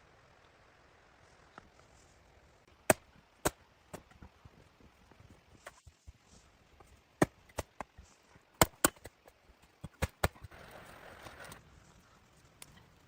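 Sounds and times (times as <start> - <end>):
rustling hiss: 0.6 - 2.7, 4.2 - 8.5.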